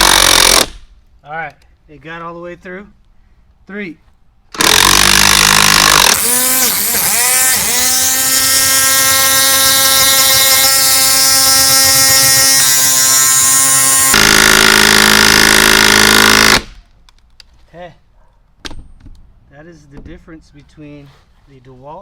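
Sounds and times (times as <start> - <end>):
impact wrench hammering: 0.0 - 0.8, 4.6 - 6.8, 7.6 - 16.8.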